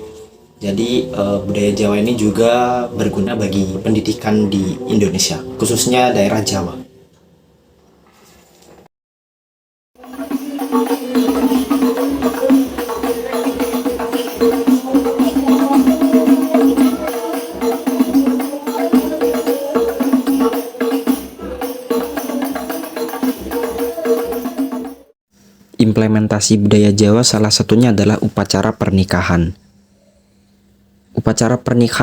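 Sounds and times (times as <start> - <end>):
music with steady beat: 10.0 - 25.2.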